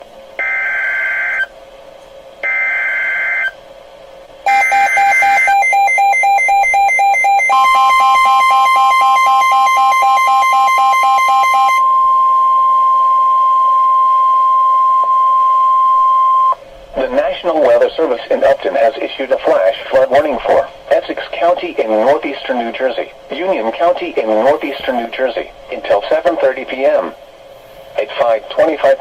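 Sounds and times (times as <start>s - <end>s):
steady warning tone: 2.4s - 3.6s, 4.4s - 27.1s
rapid alert beeping: 4.5s - 11.8s.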